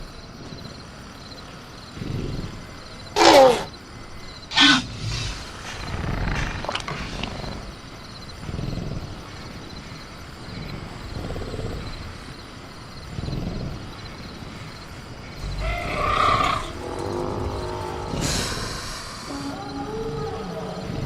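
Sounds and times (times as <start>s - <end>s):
crickets chirping: 0.0s - 21.0s
creature growling low: 15.4s - 21.0s.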